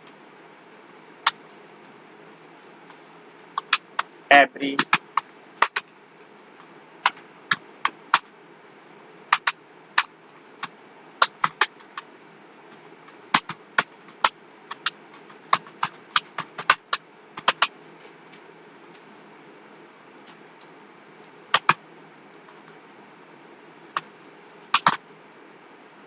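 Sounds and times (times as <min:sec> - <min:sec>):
computer keyboard typing: 0:03.5 - 0:04.1, 0:04.7 - 0:05.9, 0:09.3 - 0:10.1, 0:11.2 - 0:12.1, 0:13.0 - 0:17.7, 0:21.5 - 0:21.8, 0:24.7 - 0:25.0.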